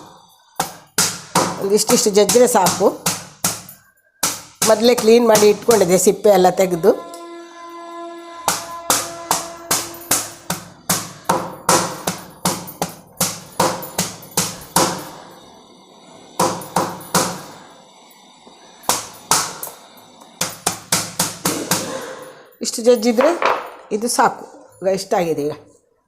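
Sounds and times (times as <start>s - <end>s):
ginger being pounded: 0.6s - 5.9s, 8.4s - 15.1s, 16.4s - 17.5s, 20.4s - 22.0s.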